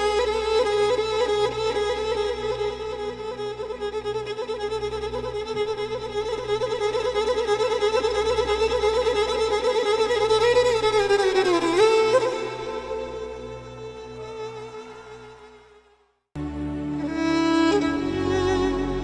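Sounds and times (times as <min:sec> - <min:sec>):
violin long note with vibrato: 0:16.4 - 0:19.0.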